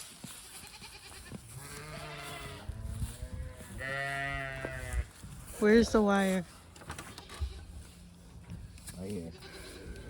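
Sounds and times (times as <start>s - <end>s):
farm animal calling: 0.3s - 8.2s, 8.8s - 10.0s.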